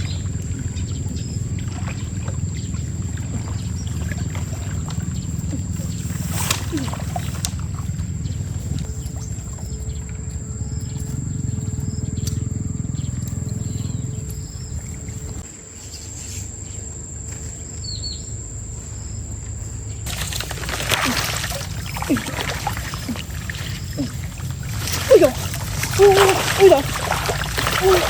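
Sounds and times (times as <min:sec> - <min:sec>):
water splashing: 0:00.0 - 0:10.3, 0:20.1 - 0:28.0
fast-flowing stream rumble: 0:20.1 - 0:28.0.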